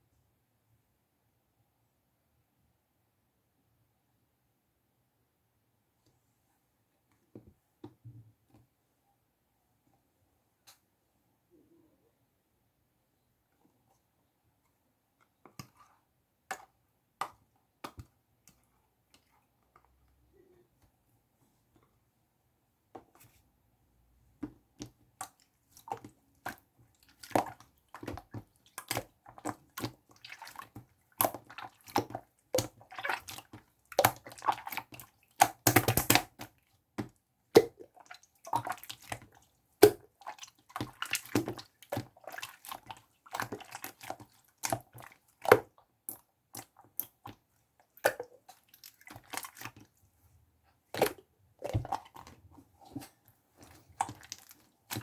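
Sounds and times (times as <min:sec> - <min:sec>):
slime squishing with wet clicks: 0:15.2 - 0:20.6, 0:24.4 - 0:50.0, 0:50.7 - 0:55.0.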